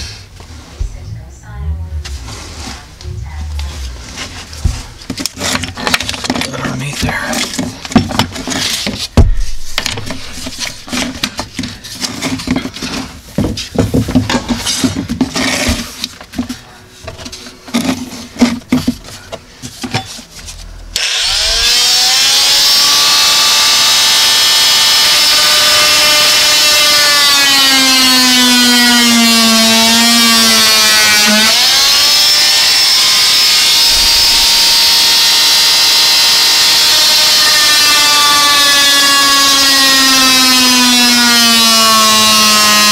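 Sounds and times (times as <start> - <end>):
knocks and clicks of handwork: 7.4 - 20.2
power saw cutting wood: 21.0 - 42.9.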